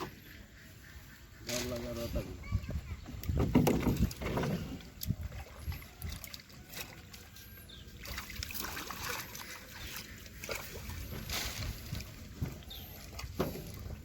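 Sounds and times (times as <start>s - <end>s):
water splashing against boat: 3.1s - 14.0s.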